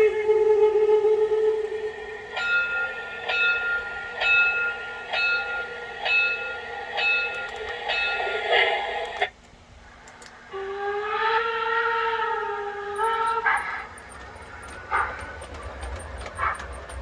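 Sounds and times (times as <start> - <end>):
train bell ringing: 1.9 - 9.3, 13.0 - 17.0.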